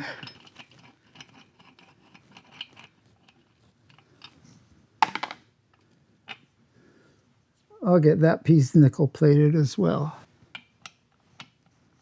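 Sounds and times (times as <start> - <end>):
metal parts and tools clinking: 0.0 - 4.4.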